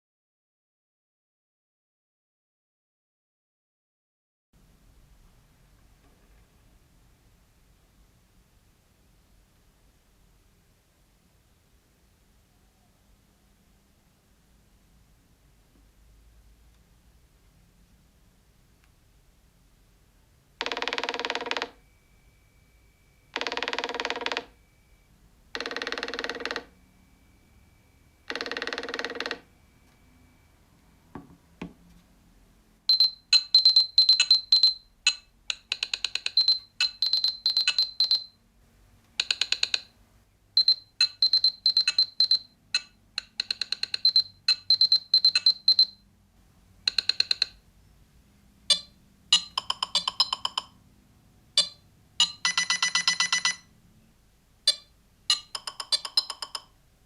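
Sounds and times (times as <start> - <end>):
phone ringtone: 20.6 - 31.6, 32.9 - 38.4, 39.2 - 39.9, 40.6 - 46.0, 46.8 - 47.6, 48.7 - 50.8, 51.5 - 53.7, 54.7 - 56.8.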